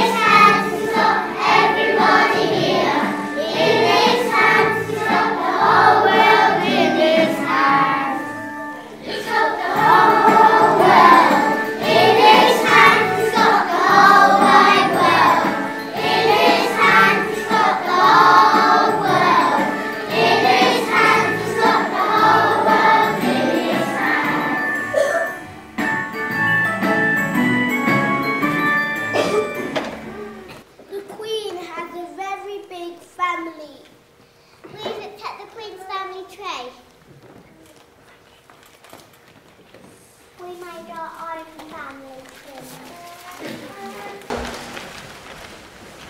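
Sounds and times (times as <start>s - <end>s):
children singing: 0.0s - 25.1s
musical accompaniment: 0.0s - 30.7s.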